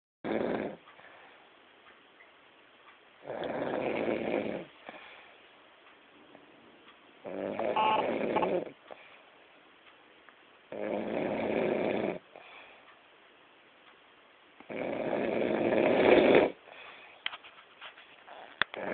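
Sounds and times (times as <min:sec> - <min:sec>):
loud snoring: 0:00.2 - 0:00.8, 0:03.2 - 0:04.7, 0:07.3 - 0:08.7, 0:10.7 - 0:12.2, 0:14.7 - 0:16.6, 0:18.3 - 0:18.9.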